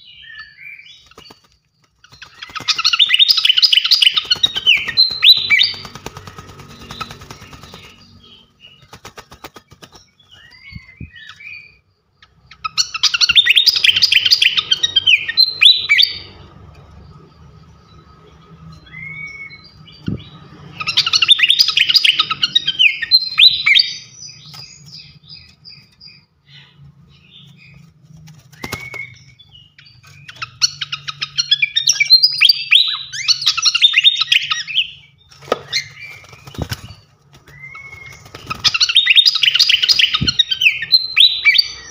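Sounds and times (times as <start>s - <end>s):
songbird singing rapid high notes: 2.2s - 26.3s.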